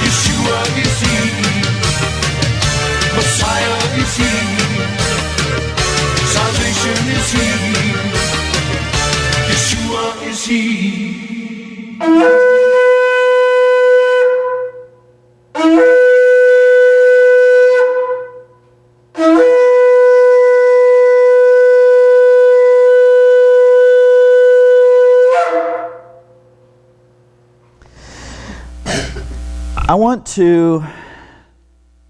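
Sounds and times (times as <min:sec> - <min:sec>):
shofar blasts: 0:12.0 - 0:14.9, 0:15.6 - 0:18.4, 0:19.2 - 0:26.2.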